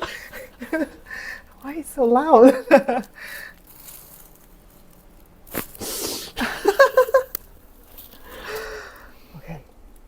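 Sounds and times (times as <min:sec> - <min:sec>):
person laughing: 0:00.0 - 0:01.3, 0:02.4 - 0:03.1, 0:05.8 - 0:07.4
person exhaling breathily: 0:05.8 - 0:06.6, 0:08.2 - 0:09.2.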